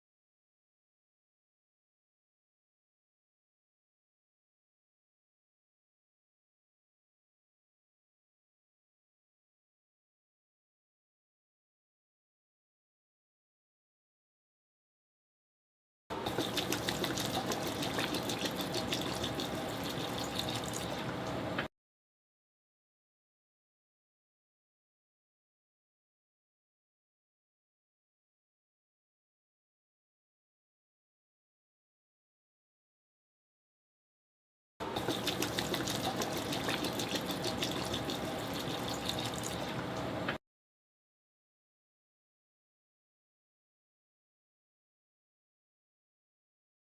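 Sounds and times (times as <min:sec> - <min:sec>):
water pouring from bottle: 0:16.3 - 0:21.1, 0:35.0 - 0:39.8.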